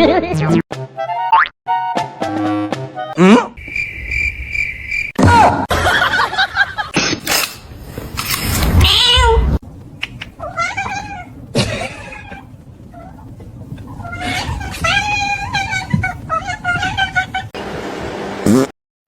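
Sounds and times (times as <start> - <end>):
cats meowing and yowling: 10.0 - 17.6.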